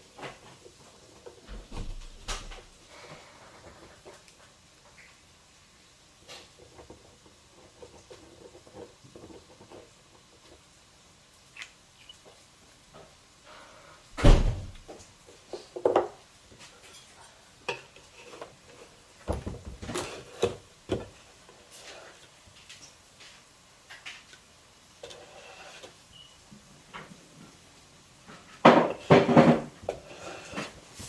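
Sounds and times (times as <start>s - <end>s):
heavy thump: 14.2s - 14.9s
objects knocking and clattering: 19.2s - 21.2s, 28.3s - 30.8s.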